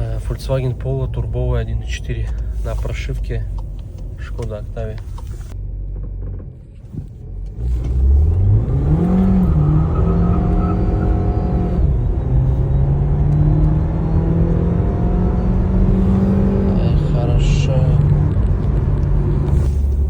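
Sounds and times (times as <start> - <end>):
gear change: 0.0 - 20.0
car engine accelerating hard: 7.4 - 20.0.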